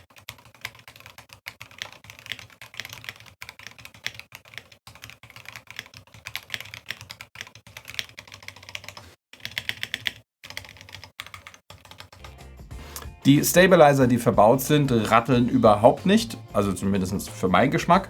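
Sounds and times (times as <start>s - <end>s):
mechanical keyboard typing: 0.0s - 12.4s.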